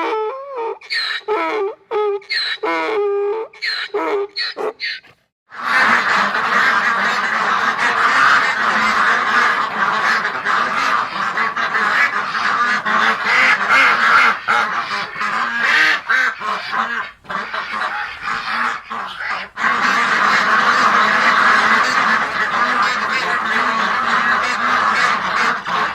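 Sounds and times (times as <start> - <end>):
waterfowl flock calling: 3.6 - 25.9.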